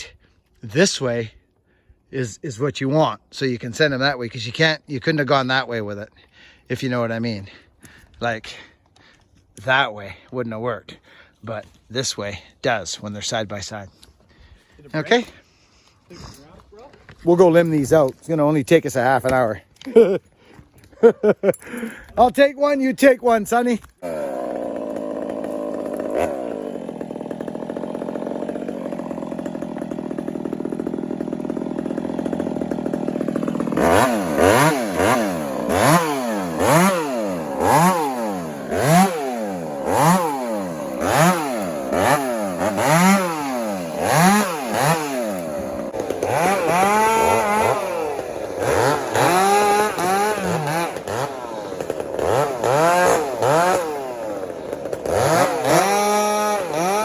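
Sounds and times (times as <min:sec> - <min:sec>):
chainsaw revving: 0:23.5 - 0:57.0.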